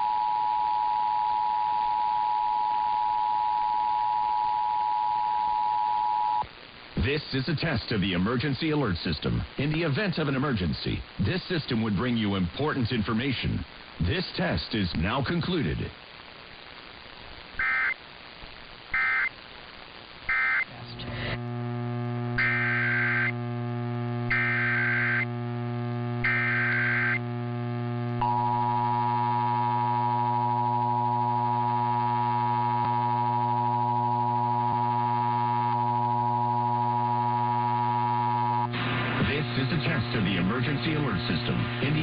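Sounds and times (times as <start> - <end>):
low mains hum: 0.0 - 42.0
digital data bursts: 17.6 - 18.0, 18.9 - 19.4, 20.3 - 20.7, 22.4 - 23.4, 24.3 - 25.3, 26.2 - 27.4.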